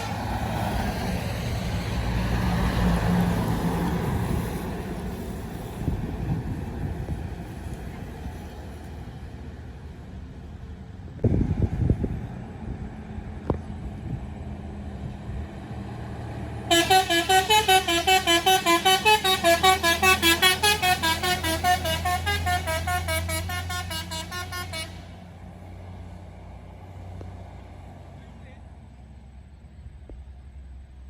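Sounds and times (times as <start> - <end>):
bus engine hum: 0.0 - 31.0
musical air horn playing a tune: 16.7 - 25.2.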